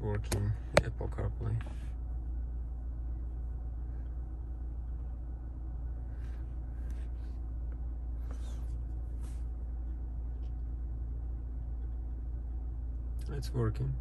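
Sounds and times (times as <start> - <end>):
faint rustles: 5.9 - 10.7.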